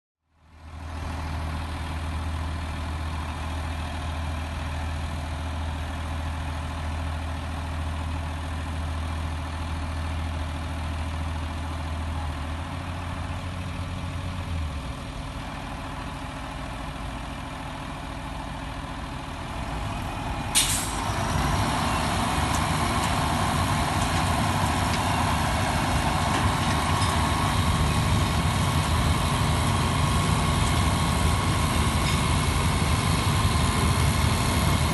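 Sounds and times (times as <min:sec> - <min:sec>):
engines running: 0:11.0 - 0:34.9.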